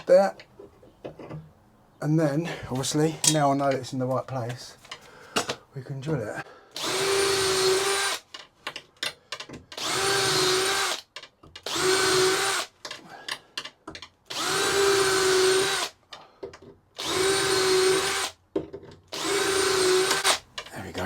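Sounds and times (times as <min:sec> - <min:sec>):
power drill boring into wood: 0:06.8 - 0:08.2, 0:09.8 - 0:11.0, 0:11.6 - 0:12.7, 0:14.3 - 0:16.0, 0:17.0 - 0:18.4, 0:19.1 - 0:20.4.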